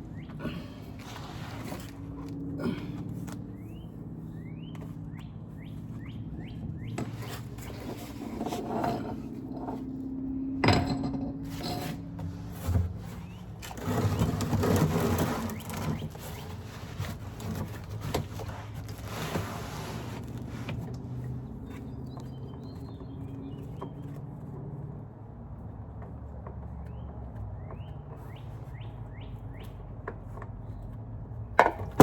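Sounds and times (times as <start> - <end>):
scraping of parts and tools: 0.0 - 3.8, 6.9 - 21.8
tools knocking on car parts: 9.4 - 12.2.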